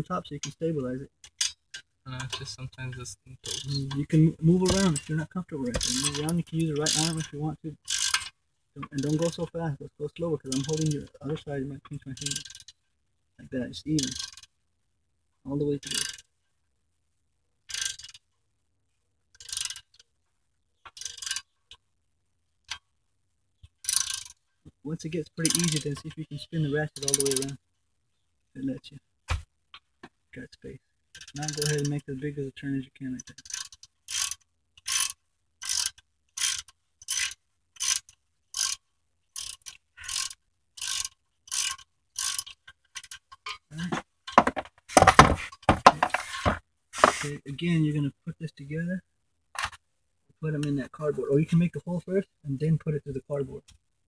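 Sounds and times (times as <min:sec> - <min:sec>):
socket ratchet clicking: 0:03.5 - 0:03.9, 0:05.8 - 0:07.3, 0:07.9 - 0:08.3, 0:14.0 - 0:14.5, 0:20.9 - 0:21.5, 0:23.8 - 0:24.4, 0:27.0 - 0:27.5, 0:33.3 - 0:38.8, 0:39.4 - 0:43.5.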